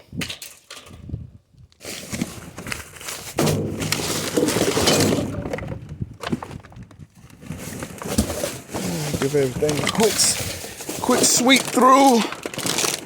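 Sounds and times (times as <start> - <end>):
junk clattering and scraping: 2.1 - 12.7
debris knocks: 3.3 - 6.8.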